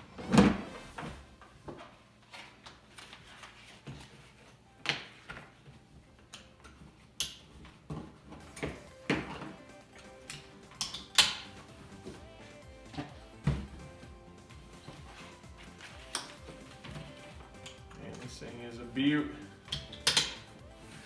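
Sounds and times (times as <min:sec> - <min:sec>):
items knocking being set down: 0:12.9 - 0:14.0.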